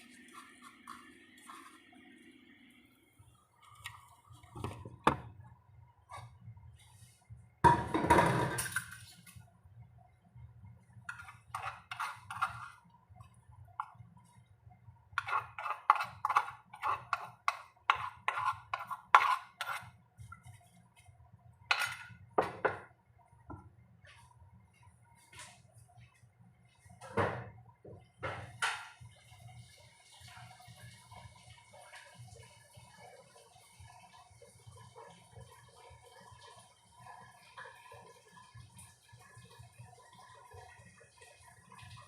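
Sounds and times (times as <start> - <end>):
dishes clattering: 7.7 - 9.0, 21.7 - 22.9
dishes and utensils clinking: 7.7 - 9.2, 21.7 - 22.8.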